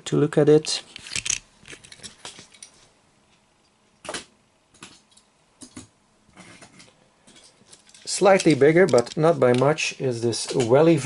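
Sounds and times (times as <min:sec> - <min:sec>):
metal toy cars clicking: 0:07.3 - 0:09.7.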